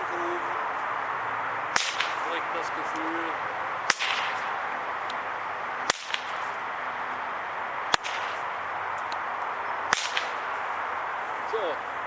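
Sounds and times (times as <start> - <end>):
bullwhip cracking: 1.7 - 3.1, 3.8 - 5.2, 5.8 - 6.8, 7.9 - 9.3, 9.9 - 10.9.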